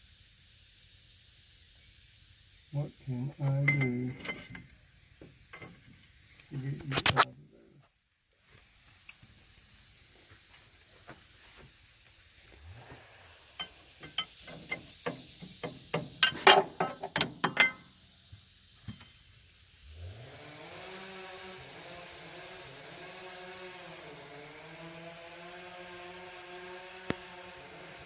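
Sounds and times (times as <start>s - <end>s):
ratchet wrench clicking: 13.6s - 18.0s.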